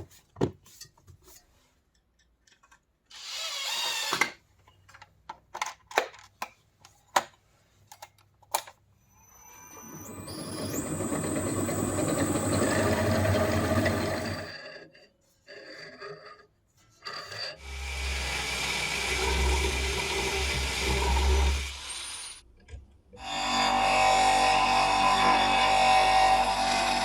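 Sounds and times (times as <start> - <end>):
drill press humming: 9.2 - 14.5, 17.6 - 22.3.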